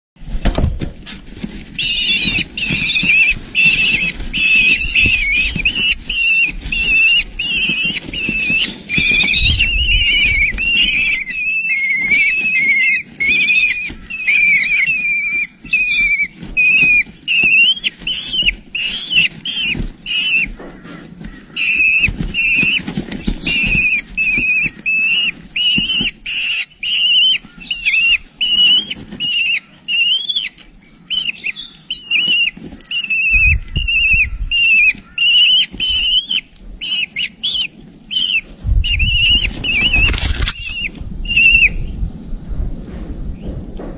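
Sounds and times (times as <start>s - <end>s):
young kestrel calling: 1.7s - 41.9s
low rumbling noise: 38.4s - 43.9s.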